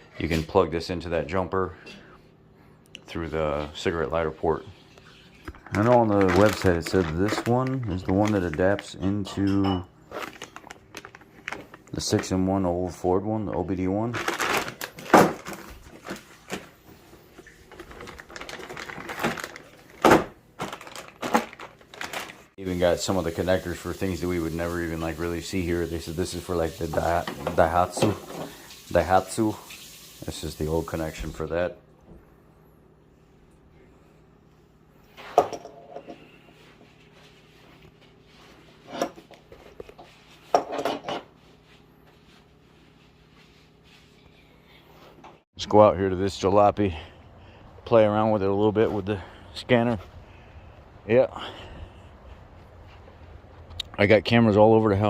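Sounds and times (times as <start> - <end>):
steady low hum: 41.0 - 55.0.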